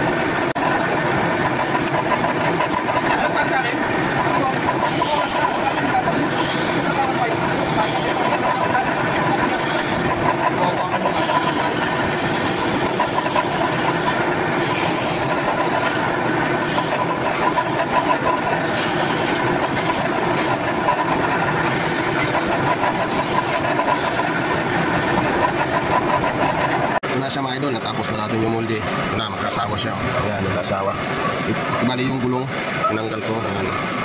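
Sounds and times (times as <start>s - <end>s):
workshop machine whirring and rattling: 0.0s - 34.0s.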